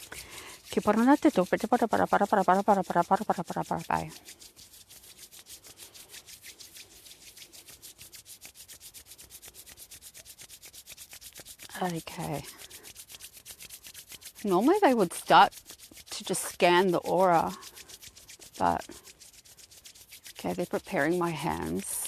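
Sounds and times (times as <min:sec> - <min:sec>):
scratchy rubbing rhythm: 0:00.0 - 0:22.0.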